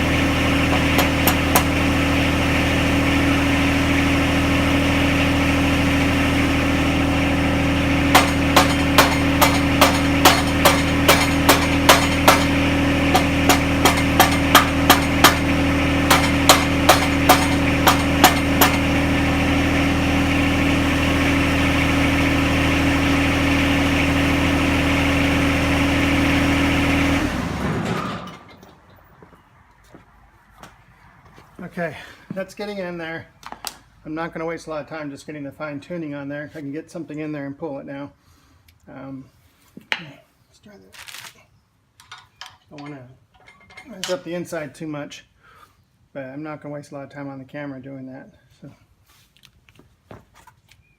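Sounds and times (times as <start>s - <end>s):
diesel tractor idling: 0.0s - 29.1s
hammer striking metal: 0.7s - 1.8s, 8.1s - 19.0s.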